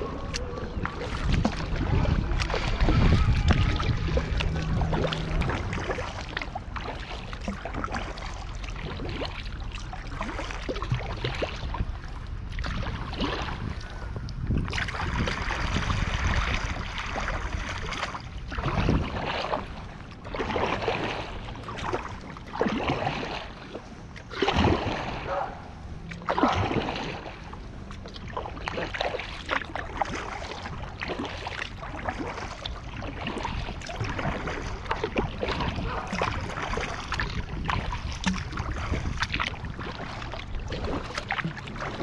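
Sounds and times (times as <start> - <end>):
wind buffeting microphone: 0.0 - 8.2, 10.2 - 23.2, 33.1 - 42.0
paddle strokes splashing: 0.0 - 42.0.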